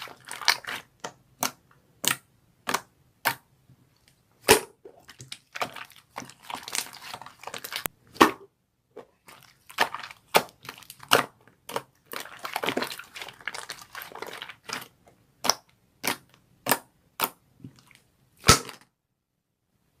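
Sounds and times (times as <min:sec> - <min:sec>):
plastic packaging crinkling: 0:05.2 - 0:07.9, 0:12.1 - 0:14.9.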